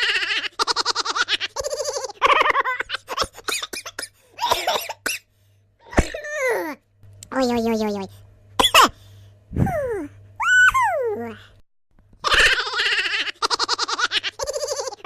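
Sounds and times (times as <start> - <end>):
person laughing: 0.0 - 3.8, 12.2 - 15.0.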